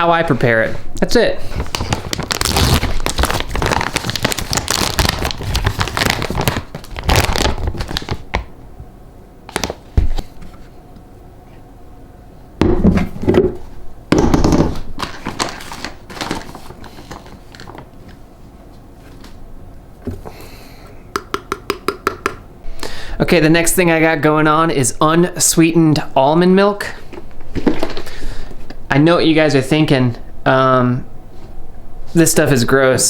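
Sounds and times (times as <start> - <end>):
plastic packaging crinkling: 1.4 - 8.3, 9.5 - 9.9, 15.0 - 18.2.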